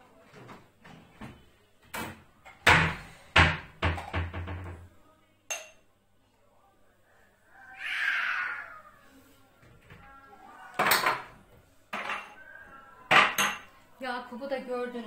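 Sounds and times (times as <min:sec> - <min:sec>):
crockery clink: 0:05.5 - 0:05.9, 0:11.9 - 0:12.4, 0:13.1 - 0:13.8
dishes clattering: 0:05.5 - 0:05.9, 0:10.7 - 0:12.4, 0:13.1 - 0:13.8.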